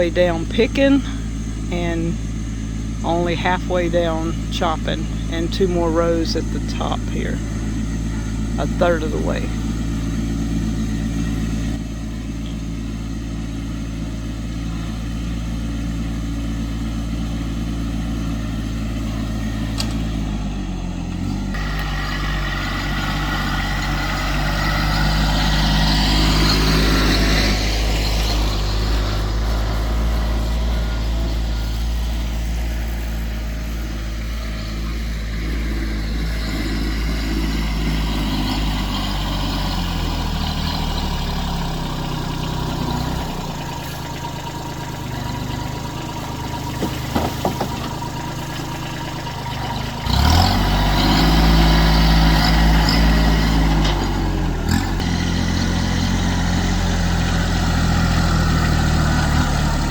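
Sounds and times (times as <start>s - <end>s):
engine running steadily: 0.0s - 59.9s.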